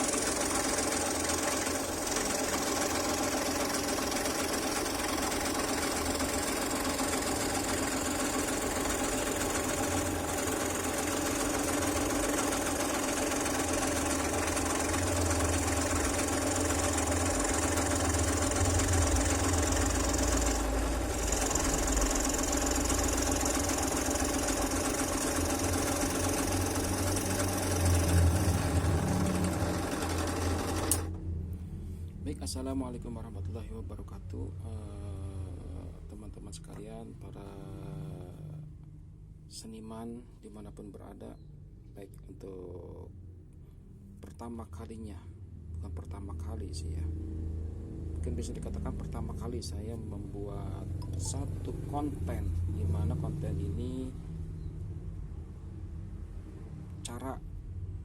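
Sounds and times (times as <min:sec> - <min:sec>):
scroll saw buzzing: 0:00.0 - 0:31.2.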